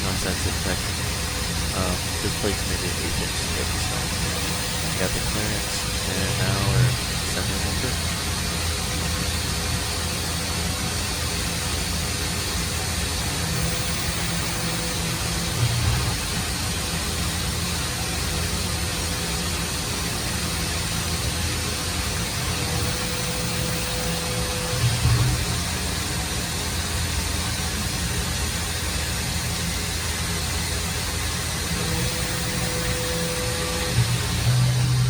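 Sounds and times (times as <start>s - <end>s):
milling machine drilling steel: 0.0s - 8.6s, 13.2s - 16.8s, 21.6s - 27.1s, 30.9s - 35.0s
faint whine: 0.0s - 8.8s, 11.8s - 16.7s, 22.1s - 26.2s, 31.4s - 35.0s.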